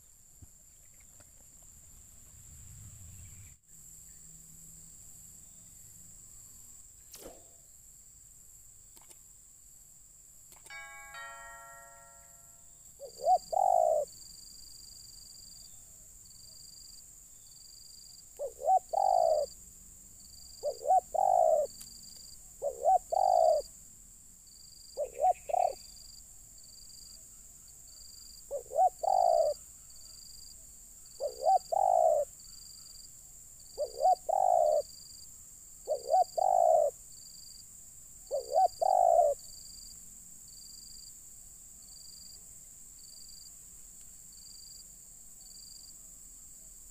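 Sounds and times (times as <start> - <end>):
high pulsing insect call: 0.0 - 46.9
dove cooing: 13.0 - 14.1, 18.4 - 19.5, 20.6 - 21.7, 22.6 - 23.7, 25.0 - 25.8, 28.5 - 29.6, 31.2 - 32.3, 33.8 - 34.9, 35.8 - 37.0, 38.3 - 39.4.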